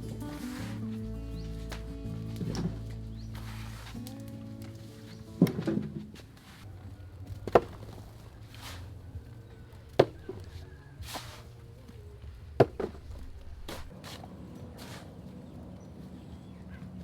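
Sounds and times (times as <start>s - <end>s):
rustling swishes: 0.0s - 5.4s, 8.0s - 9.3s, 10.4s - 12.0s.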